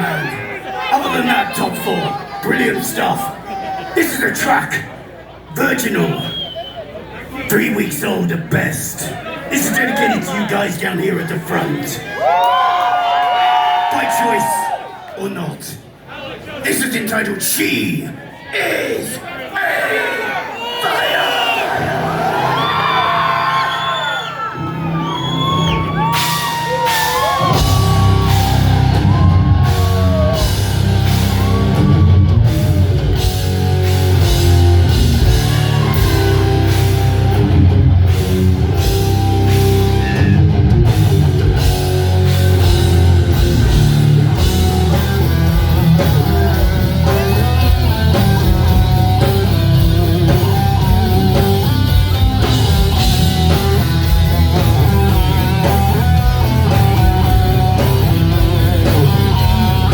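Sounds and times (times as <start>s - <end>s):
electric guitar: 24.6s - 59.9s
rock band playing live: 24.6s - 59.9s
drum kit: 25.6s - 59.9s.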